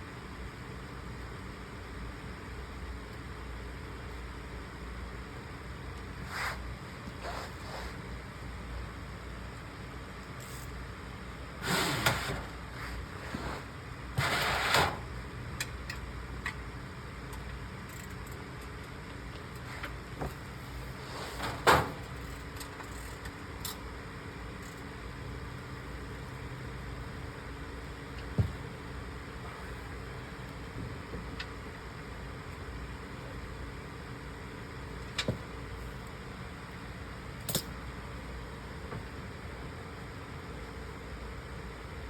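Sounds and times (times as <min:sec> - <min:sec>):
steady hum: 0:00.0 - 0:42.0.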